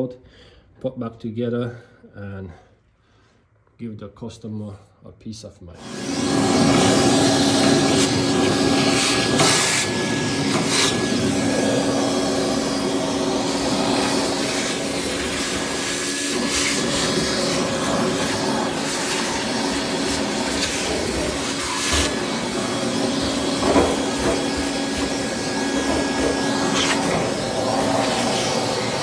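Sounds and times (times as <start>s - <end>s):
small vacuum cleaner humming: 5.8s - 29.0s
vacuum rasps: 5.8s - 29.0s.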